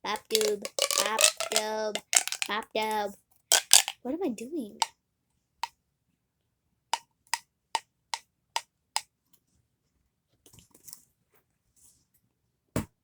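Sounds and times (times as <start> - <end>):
pop tube toy snapping clicks: 0.2 - 2.5, 3.5 - 4.0
soft rustle: 9.3 - 12.3.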